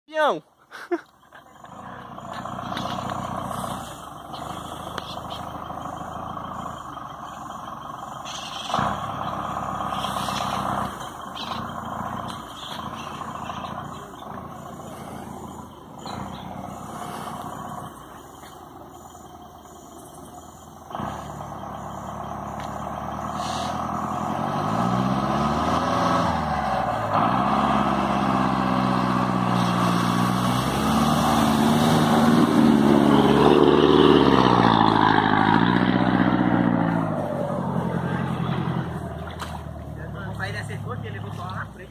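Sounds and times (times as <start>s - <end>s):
pickup engine roaring: 1.1s - 41.9s.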